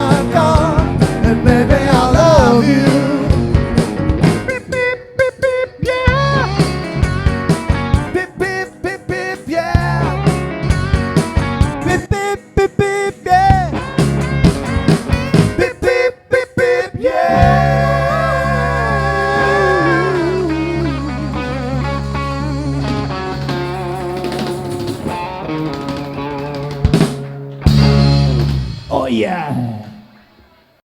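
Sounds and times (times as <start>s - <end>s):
person singing: 0.0s - 3.6s, 11.8s - 13.9s, 15.6s - 23.1s
rock music: 0.0s - 29.5s
held guitar chord: 17.4s - 28.9s.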